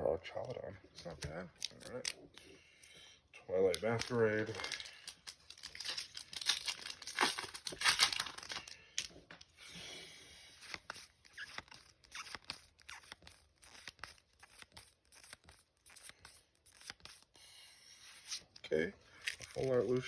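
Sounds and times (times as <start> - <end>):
foil wrapper tearing: 3.8 - 9.1, 10.6 - 17.3, 19.2 - 20.0
trading cards flicking and sliding: 10.5 - 18.6.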